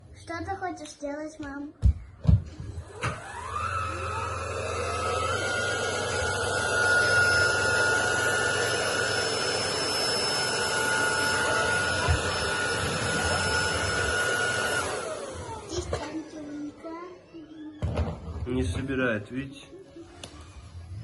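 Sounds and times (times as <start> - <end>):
vacuum cleaner motor whine: 2.7 - 18.9.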